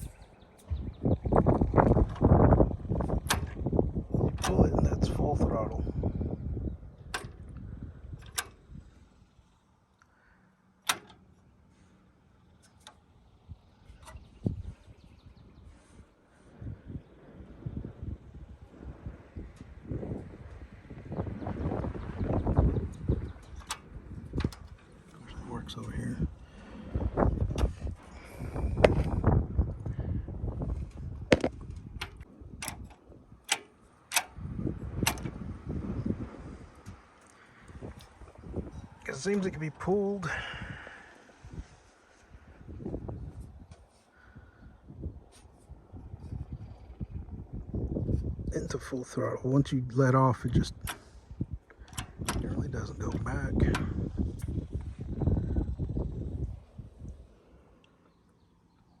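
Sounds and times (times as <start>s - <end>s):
low handling noise: 0.0s - 9.7s, 10.8s - 40.2s
throttle lever clicks: 3.2s - 3.6s, 4.2s - 4.8s, 7.1s - 7.6s, 8.2s - 8.7s, 10.8s - 11.3s, 23.3s - 25.1s, 31.3s - 34.4s, 35.0s - 35.4s, 51.7s - 52.5s.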